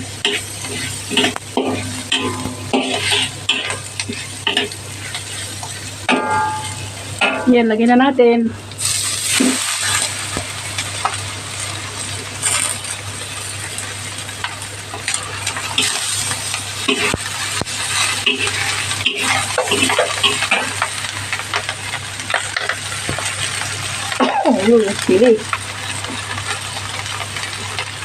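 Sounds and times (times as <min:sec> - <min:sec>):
food sizzling in hot oil: 0:00.0 - 0:28.0
metal utensil scraping a pan: 0:00.2 - 0:07.7, 0:17.8 - 0:20.8.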